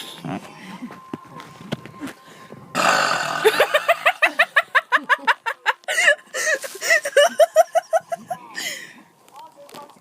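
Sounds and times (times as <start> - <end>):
person burping: 2.8 - 4.2
person giggling: 3.4 - 8.6.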